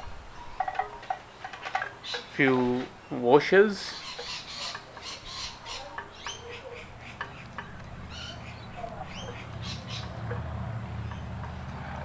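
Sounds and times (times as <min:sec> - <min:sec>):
small birds chirping: 0:00.3 - 0:10.4.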